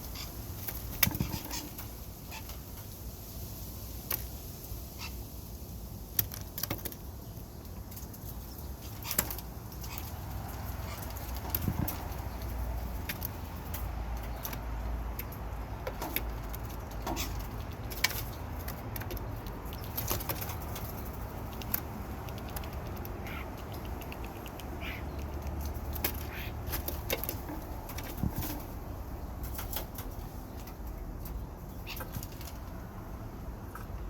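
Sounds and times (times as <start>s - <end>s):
sharp clicks and ticks: 11.1s - 28.0s.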